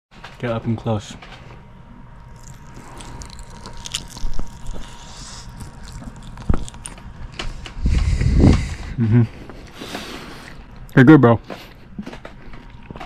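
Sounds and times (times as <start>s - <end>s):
chewing crunchy food: 2.2s - 8.0s, 11.5s - 13.0s.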